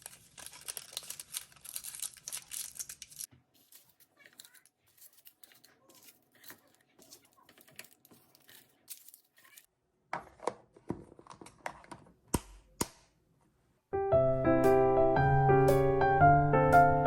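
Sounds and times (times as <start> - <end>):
rustling: 0.0 - 9.7
tearing or crinkling: 0.0 - 9.7
piano music: 13.9 - 17.0.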